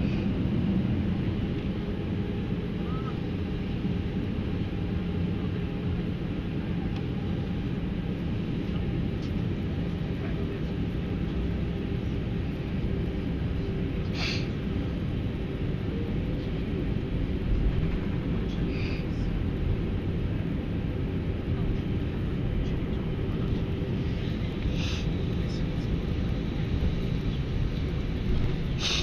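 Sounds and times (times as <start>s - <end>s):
airliner cabin engine rumble: 0.0s - 29.0s.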